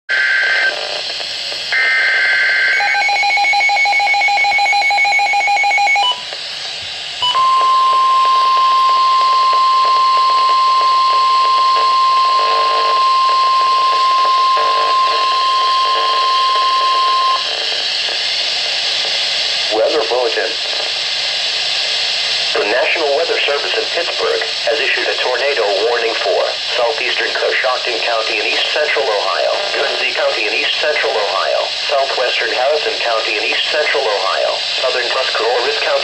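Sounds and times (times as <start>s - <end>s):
steady warning alarm tone: 1.7s - 6.3s, 7.2s - 17.6s
fast pulsing beep: 7.2s - 17.5s.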